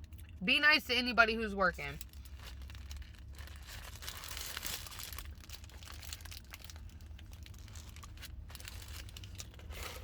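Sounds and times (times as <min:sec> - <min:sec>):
paper wrapper crinkling: 0:02.0 - 0:10.0.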